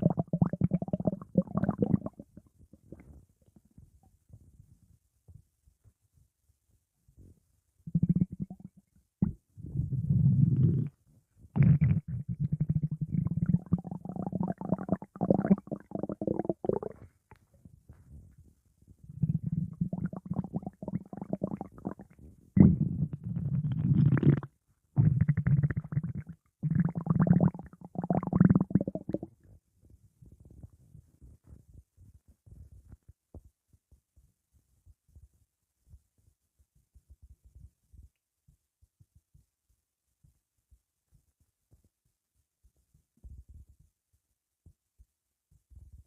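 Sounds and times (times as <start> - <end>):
stomach gurgling: 0.0 - 4.0, 7.9 - 18.3, 19.0 - 29.6.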